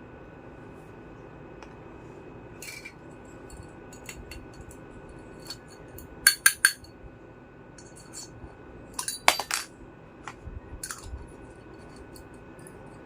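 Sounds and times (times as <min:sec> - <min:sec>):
toy kitchen pieces clinking: 0:02.6 - 0:03.0, 0:05.4 - 0:06.9, 0:09.0 - 0:09.7, 0:10.8 - 0:11.2.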